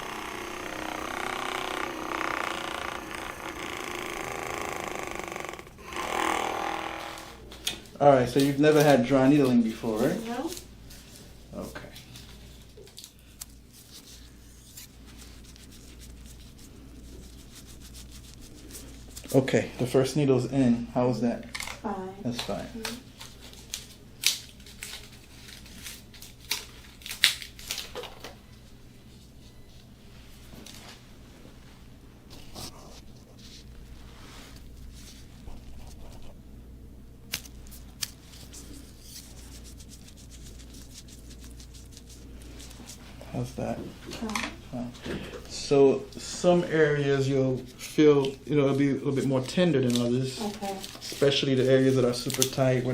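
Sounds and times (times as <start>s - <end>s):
steady low hum: 0.0s - 27.7s, 28.3s - 52.9s.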